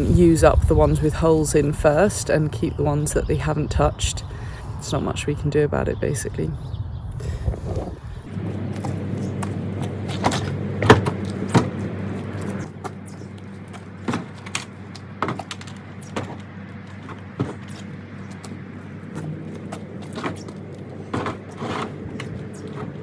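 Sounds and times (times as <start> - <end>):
vehicle engine idling: 8.2 - 23.0
knocks and rattles: 8.8 - 13.0, 13.7 - 23.0.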